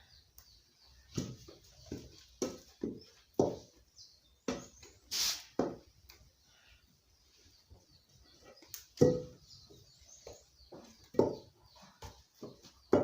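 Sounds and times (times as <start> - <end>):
short hiss: 5.1 - 5.6.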